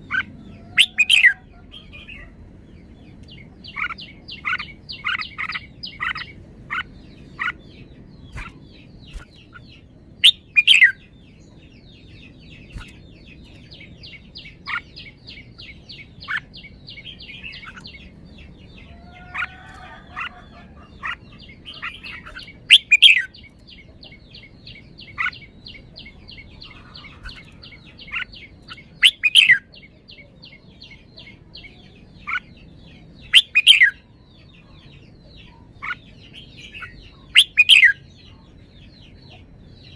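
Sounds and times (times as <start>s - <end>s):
bird call notes: 0.0s - 2.3s
bird singing bright phrases: 0.0s - 39.9s.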